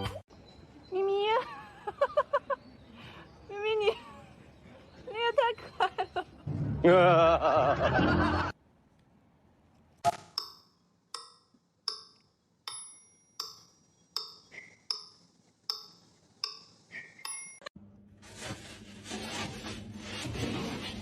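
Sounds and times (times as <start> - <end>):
sharp ringing taps: 10.4 - 17.7.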